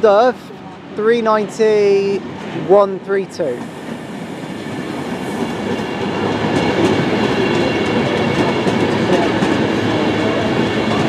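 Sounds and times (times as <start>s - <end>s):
train wheels clicking over rail joints: 3.4s - 11.0s.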